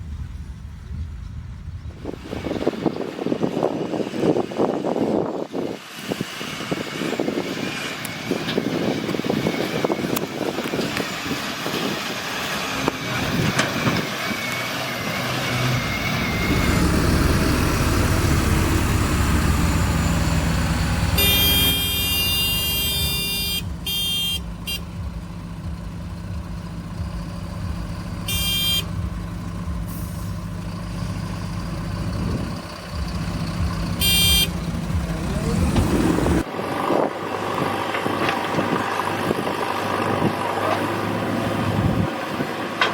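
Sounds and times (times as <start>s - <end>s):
diesel engine under load: 0.0s - 42.9s
short high-pitched horn toots: 21.2s - 24.9s, 28.2s - 29.0s, 34.0s - 34.6s.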